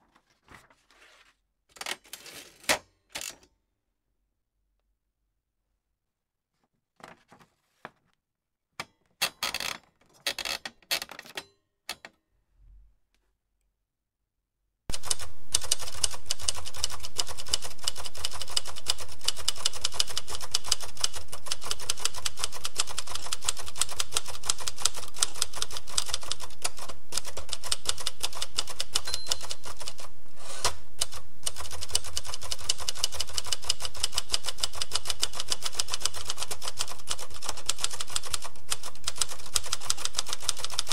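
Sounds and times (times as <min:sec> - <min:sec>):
typewriter typing: 0:14.9 - 0:40.9.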